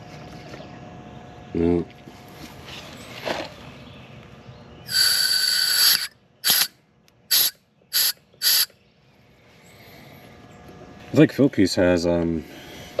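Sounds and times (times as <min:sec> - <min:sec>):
gas hissing from valve: 0:04.9 - 0:06.7, 0:07.3 - 0:08.7.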